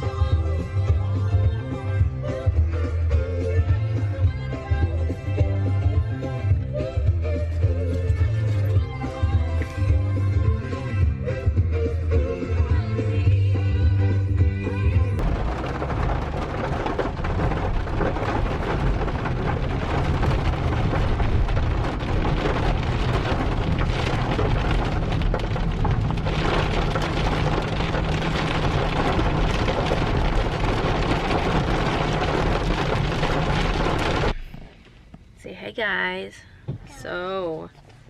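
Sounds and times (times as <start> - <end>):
heavy rain falling: 15.2 - 34.4.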